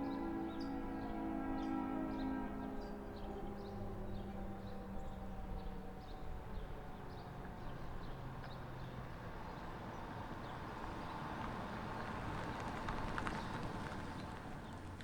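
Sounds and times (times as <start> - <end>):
distant warning siren: 0.0 - 9.9.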